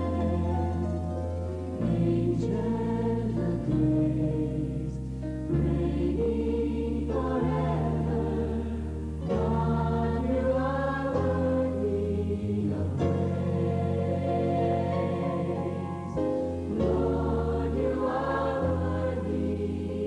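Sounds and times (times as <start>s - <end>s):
choir singing slow song: 0.0s - 20.0s.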